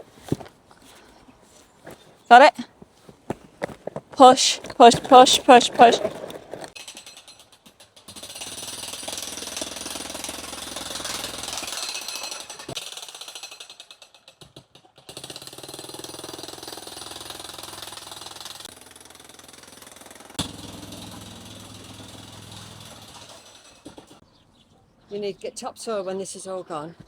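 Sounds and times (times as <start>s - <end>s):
jackhammer hammering: 8.1s - 14.2s, 15.1s - 24.2s.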